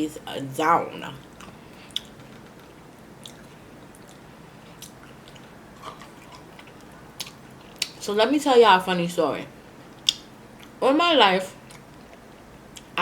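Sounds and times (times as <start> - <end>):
person chewing food: 1.2 - 8.0.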